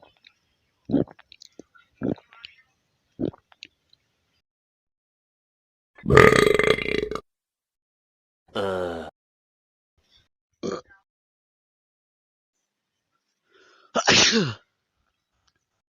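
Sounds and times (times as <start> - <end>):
low throat sounds: 0.9 - 1.2, 2.0 - 2.3, 3.2 - 3.4, 6.0 - 7.2, 8.5 - 9.1
person burping: 0.9 - 1.2, 6.0 - 7.2, 8.5 - 9.1, 10.6 - 10.9
mouth clicks: 0.9 - 2.6, 3.2 - 4.0.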